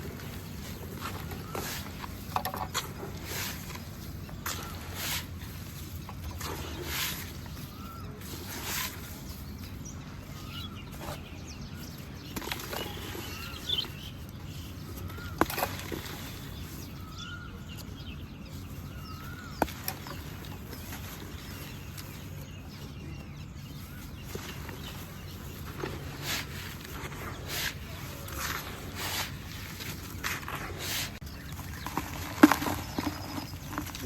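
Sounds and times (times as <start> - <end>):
bird calls: 0.0 - 34.0
water trickling over pebbles: 29.7 - 34.0.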